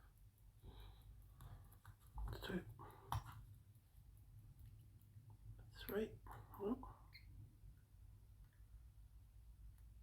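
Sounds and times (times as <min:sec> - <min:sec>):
low room hum: 0:00.0 - 0:10.0.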